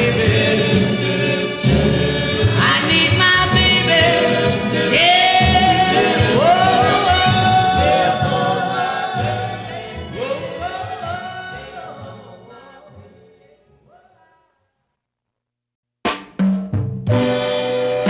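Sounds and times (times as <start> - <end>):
pop soul song with singing: 0.0 - 14.2.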